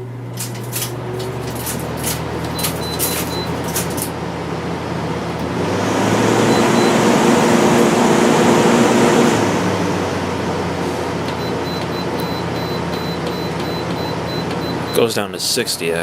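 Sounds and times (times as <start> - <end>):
air conditioner humming: 0.0 - 16.0
short high beeps: 2.6 - 3.6, 11.4 - 15.0.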